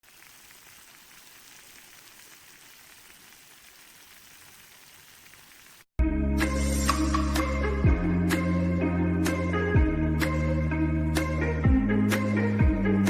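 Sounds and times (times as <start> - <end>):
faint steady hiss: 0.0 - 5.9
loud music: 6.0 - 13.0.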